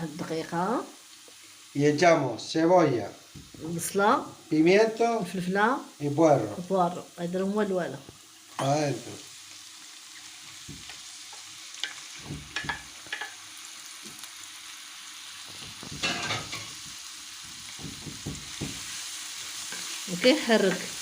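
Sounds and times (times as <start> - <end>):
vegetables sizzling in a frying pan: 0.0 - 21.0
utensil scraping and knocking pan: 11.8 - 13.4, 15.5 - 19.0.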